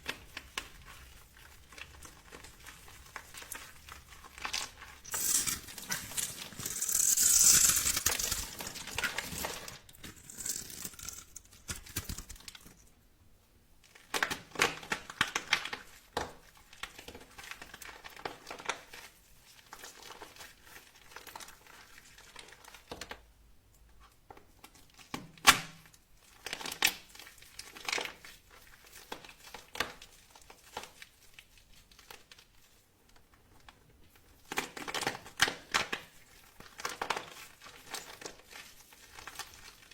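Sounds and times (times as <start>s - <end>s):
dry soap crackling and crunching: 0.0s - 13.0s, 26.2s - 39.9s.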